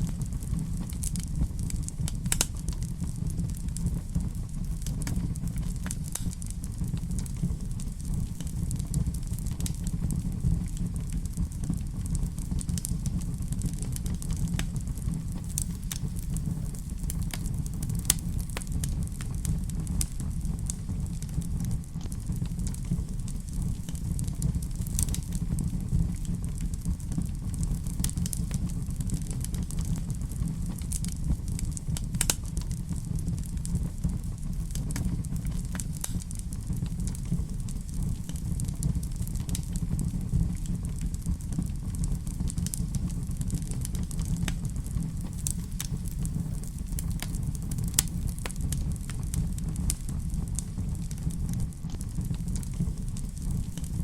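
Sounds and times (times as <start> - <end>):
fire crackling and popping: 0.0 - 54.0
low rumble of flames: 0.0 - 54.0.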